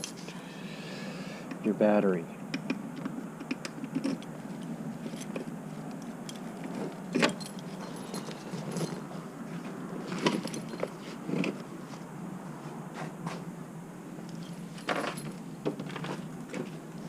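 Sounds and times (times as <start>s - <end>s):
keys jangling: 0.0s - 0.3s, 5.0s - 9.3s, 10.0s - 11.5s, 14.3s - 16.2s.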